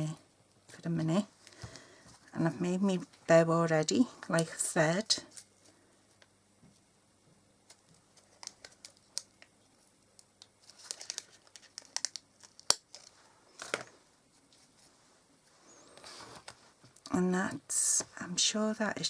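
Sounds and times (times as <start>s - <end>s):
card and ribbon rustling: 10.6s - 14.9s.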